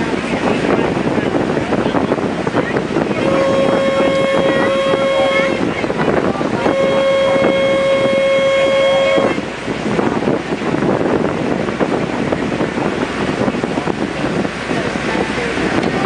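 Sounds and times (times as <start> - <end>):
boat engine noise: 0.0 - 16.0
water rushing: 0.0 - 16.0
wind buffeting microphone: 0.0 - 16.0
boat horn blast: 2.8 - 10.1.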